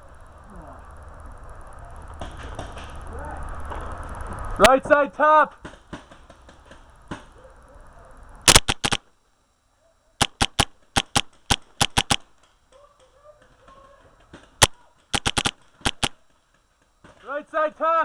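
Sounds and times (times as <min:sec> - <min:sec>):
paintball marker firing pops: 0:08.5 - 0:09.0, 0:10.2 - 0:12.3, 0:14.6 - 0:16.2.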